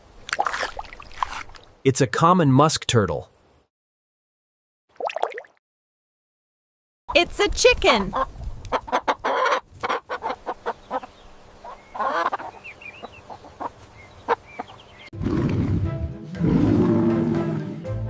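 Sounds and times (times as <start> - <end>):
chicken clucking: 8.1 - 14.8.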